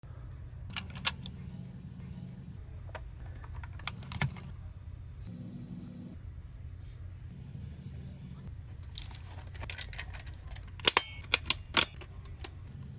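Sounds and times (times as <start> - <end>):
steady low hum: 0.0 - 12.9.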